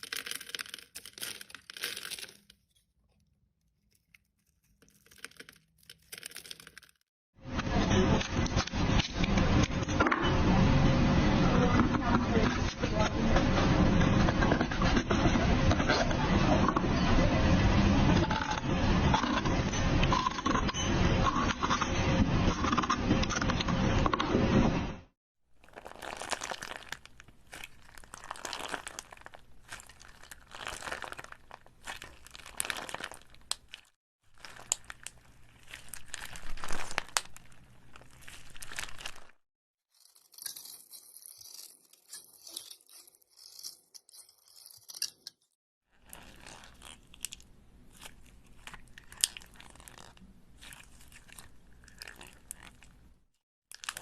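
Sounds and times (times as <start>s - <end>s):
crunching and crackling handling: 0.0s - 7.1s, 25.5s - 54.0s.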